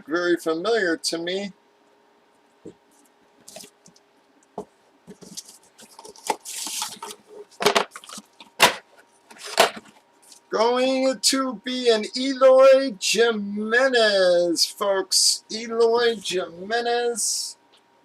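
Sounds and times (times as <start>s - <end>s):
packaging rustle: 5.1s - 10.5s.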